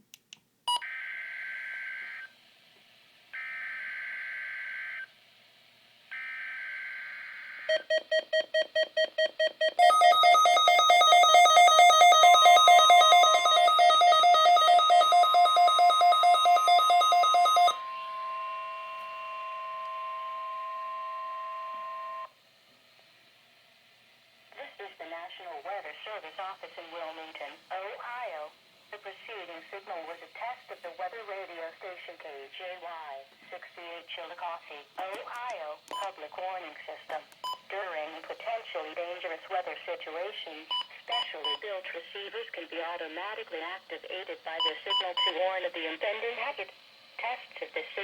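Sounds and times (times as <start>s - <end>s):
steady warning alarm tone: 6.2s - 22.4s.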